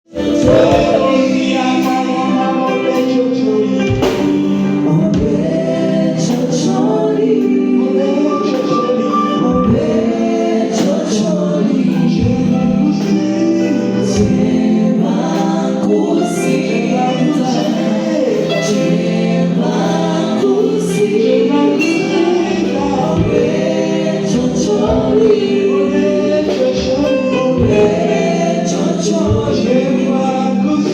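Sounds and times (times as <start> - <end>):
gospel choir singing: 0.0 - 30.9.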